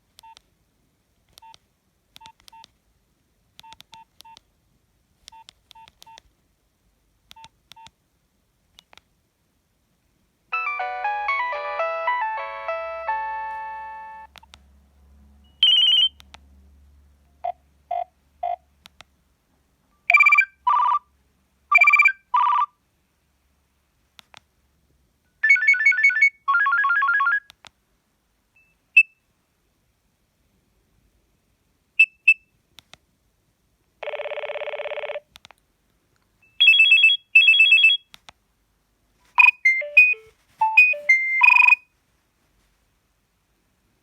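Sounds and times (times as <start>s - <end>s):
polyphonic ringtone melody: 10.5s - 14.3s, 39.4s - 41.8s
phone alert beeps and tones: 15.6s - 16.2s, 39.4s - 41.8s.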